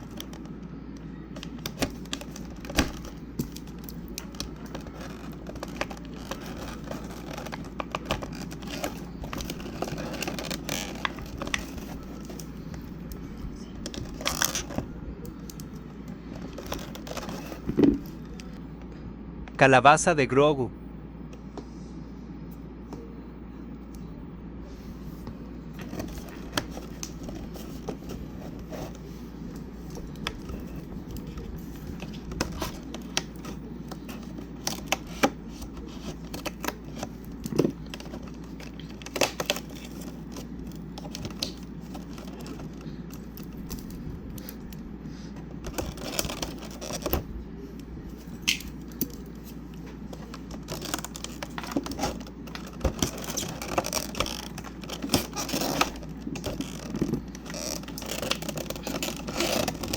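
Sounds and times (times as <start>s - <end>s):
packaging tearing and crinkling: 1.3s - 12.9s, 13.7s - 14.8s, 15.5s - 18.2s, 29.7s - 44.7s, 45.6s - 47.3s, 48.4s - 59.9s.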